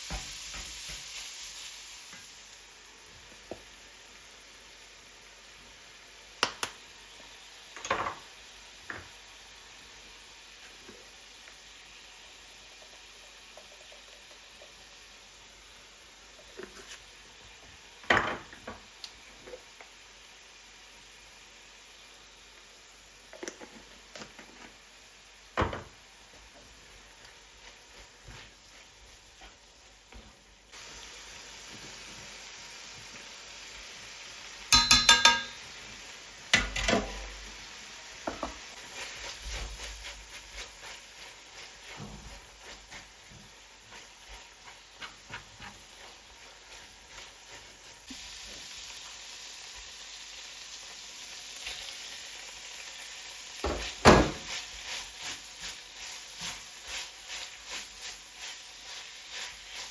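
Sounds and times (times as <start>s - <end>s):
food sizzling in a pan: 0.0s - 59.9s
kitchenware clattering: 34.7s - 35.7s, 36.6s - 37.4s
utensil scraping a pan: 38.4s - 47.9s.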